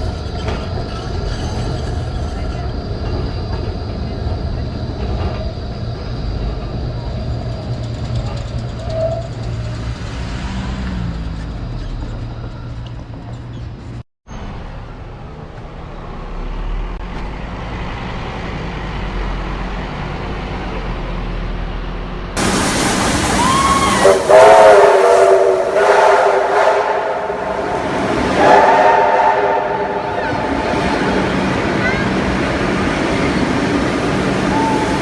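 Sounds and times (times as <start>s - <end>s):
rail vehicle rumbling: 0.0s - 35.0s
loud rush of noise: 22.4s - 35.0s.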